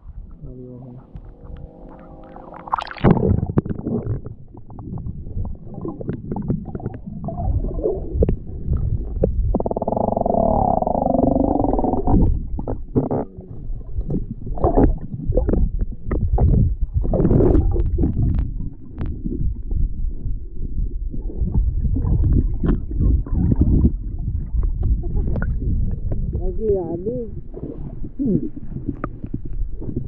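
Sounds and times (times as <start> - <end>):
wind buffeting microphone: 11.6 - 30.0.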